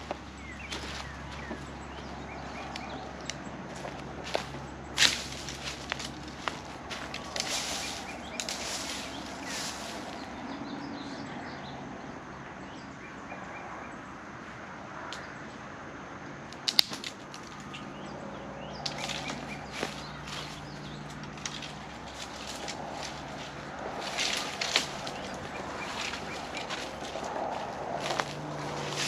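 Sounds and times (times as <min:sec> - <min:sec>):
branches swishing and rustling: 0:00.0 - 0:10.5, 0:18.9 - 0:29.0
sharp click: 0:16.5 - 0:17.5.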